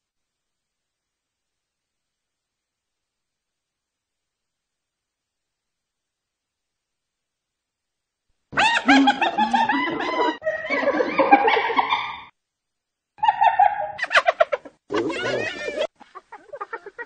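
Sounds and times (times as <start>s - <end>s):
hyena giggling: 8.6s - 12.3s, 13.2s - 17.0s.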